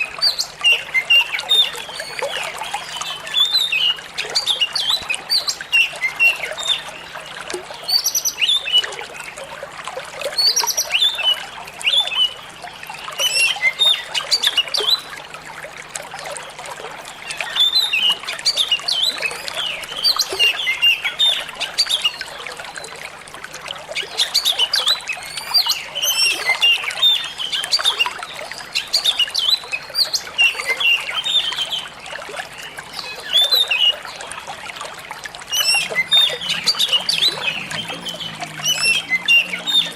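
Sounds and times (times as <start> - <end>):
trickling running water: 0.0 - 39.9
bird singing chirps and whistles: 35.5 - 39.9.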